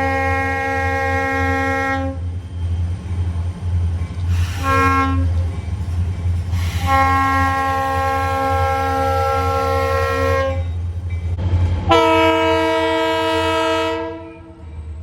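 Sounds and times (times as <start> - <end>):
locomotive air horn: 0.0 - 2.2, 4.3 - 5.4, 6.6 - 10.8, 11.9 - 14.6
train rumble: 0.0 - 15.0.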